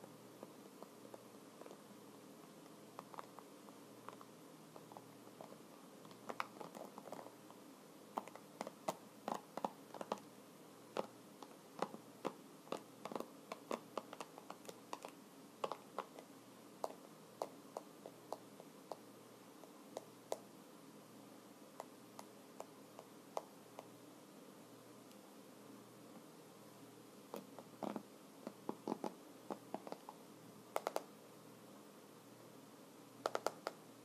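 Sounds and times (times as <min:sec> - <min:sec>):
computer keyboard typing: 0:30.8 - 0:31.1, 0:33.2 - 0:33.8.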